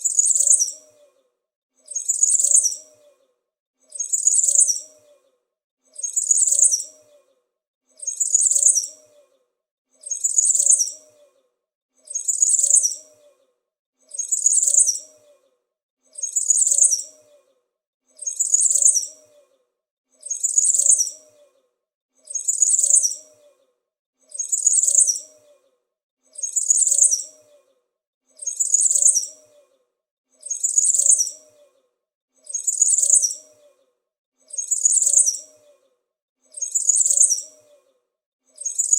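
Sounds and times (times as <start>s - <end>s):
small bird chirping: 0.0s - 1.2s, 1.9s - 3.3s, 3.9s - 5.3s, 6.0s - 7.3s, 8.0s - 9.4s, 10.0s - 11.4s, 12.1s - 13.4s, 14.1s - 15.4s, 16.2s - 17.5s, 18.1s - 19.5s, 20.2s - 21.6s, 22.2s - 23.6s, 24.3s - 25.7s, 26.3s - 27.7s, 28.3s - 29.7s, 30.4s - 31.8s, 32.4s - 33.8s, 34.4s - 35.9s, 36.5s - 38.9s.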